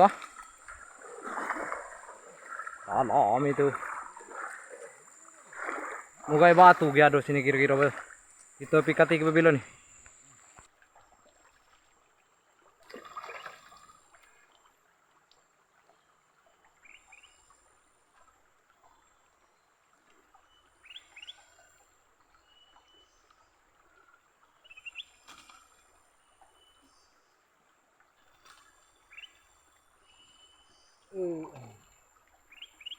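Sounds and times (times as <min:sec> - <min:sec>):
bird chirping: 0:32.5 - 0:32.9.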